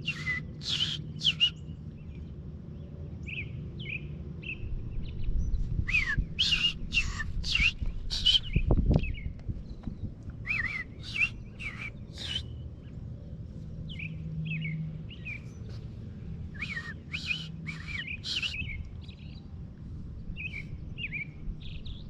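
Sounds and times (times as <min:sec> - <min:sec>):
robin chirping: 0:00.0 - 0:01.8, 0:05.9 - 0:13.0, 0:16.5 - 0:19.5.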